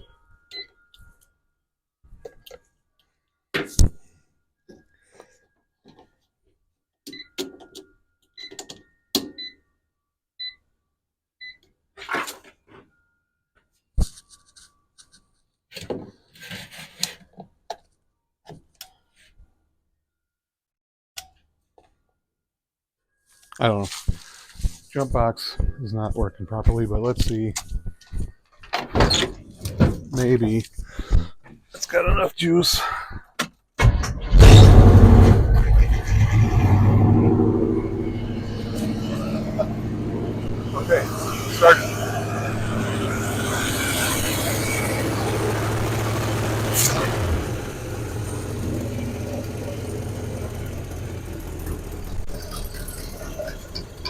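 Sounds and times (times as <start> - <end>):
pickup engine starting and rumbling: 33.8 - 54.0.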